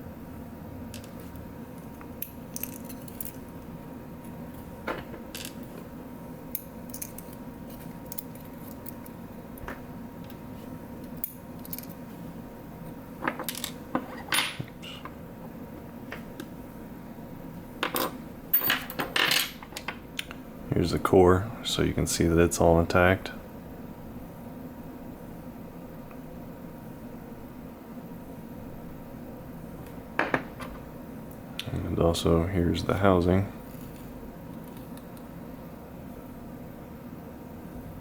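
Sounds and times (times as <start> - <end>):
faint steady hum: 0.0 - 38.0
small metal parts clinking: 2.2 - 3.4.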